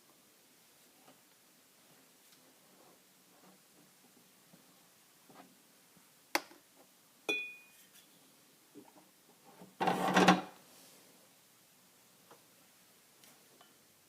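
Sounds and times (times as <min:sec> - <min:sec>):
short ringing clink: 0:07.3 - 0:07.8.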